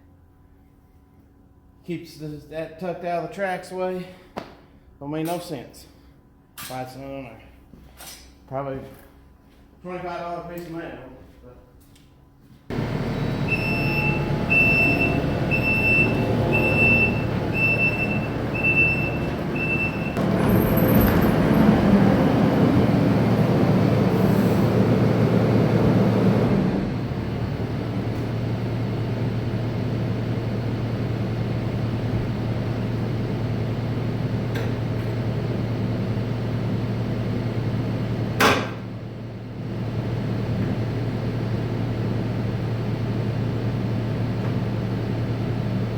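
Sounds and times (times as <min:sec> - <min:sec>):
diesel engine running: 0:12.7 - 0:45.9
high warning beeps: 0:12.9 - 0:20.2.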